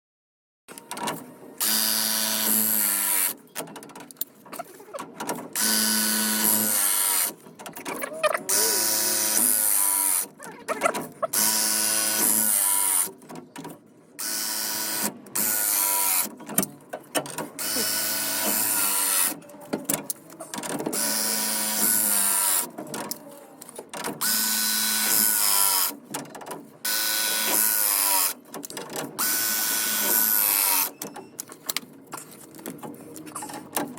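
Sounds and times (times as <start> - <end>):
electric press tool motor: 1.6 - 3.4, 5.6 - 7.3, 8.5 - 10.3, 11.3 - 13.1, 14.2 - 16.3, 17.6 - 19.4, 21.0 - 22.7, 24.2 - 26.0, 26.9 - 28.4, 29.2 - 30.9.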